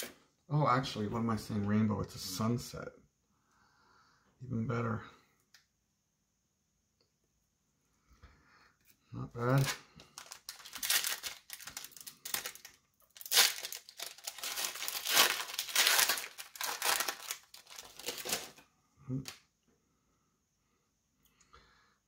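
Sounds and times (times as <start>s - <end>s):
foil wrapper crinkling and tearing: 9.5s - 18.6s.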